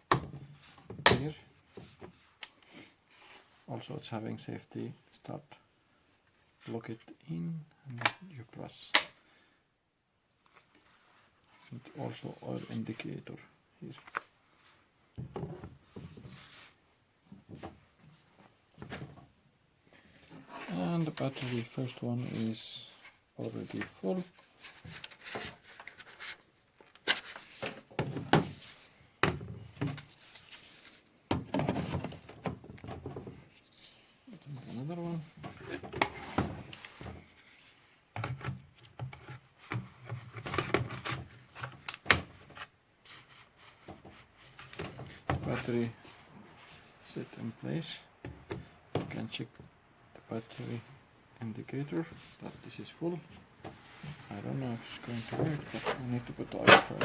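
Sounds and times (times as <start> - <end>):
sharp plastic click: 8.9 - 9.1.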